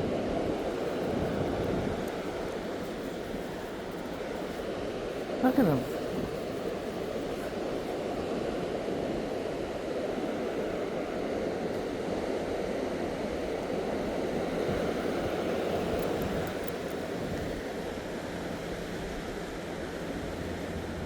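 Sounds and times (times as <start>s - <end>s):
surf on a beach: 0.0s - 21.0s
wind: 0.0s - 21.0s.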